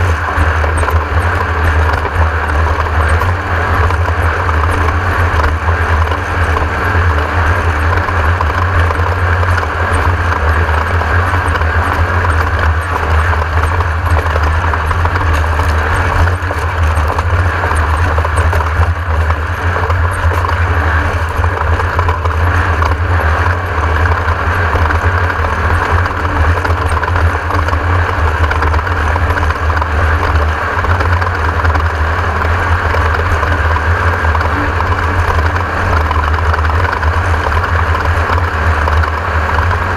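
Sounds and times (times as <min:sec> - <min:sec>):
race car engine droning: 0:00.0 - 0:39.9.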